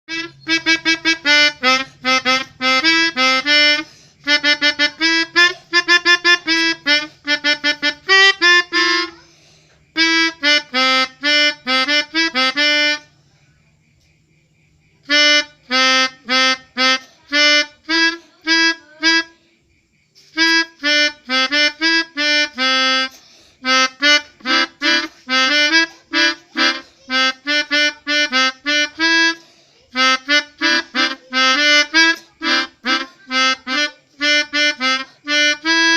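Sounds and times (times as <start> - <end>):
multi-tone horn playing melodies: 0.0 - 9.2, 9.9 - 13.1, 15.0 - 19.4, 20.2 - 35.9.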